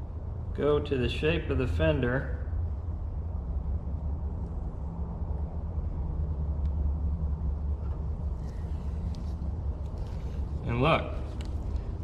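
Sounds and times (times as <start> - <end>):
low background rumble: 0.0 - 12.0.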